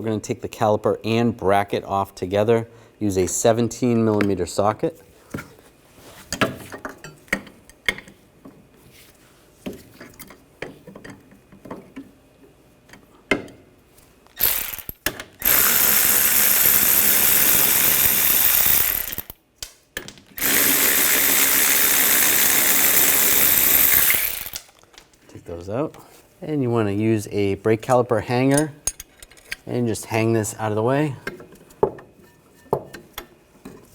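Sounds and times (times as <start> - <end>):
power tool spinning socket: 14.4 - 19.4, 20.4 - 24.8.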